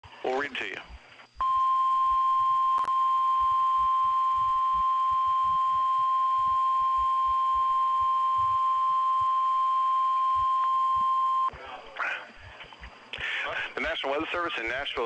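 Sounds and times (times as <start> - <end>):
high-pitched alarm tone: 1.4 - 11.5.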